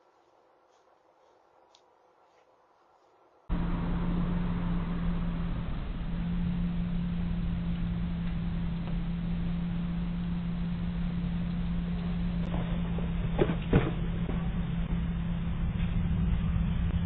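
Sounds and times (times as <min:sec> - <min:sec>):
constant low hum: 0:03.5 - 0:17.0.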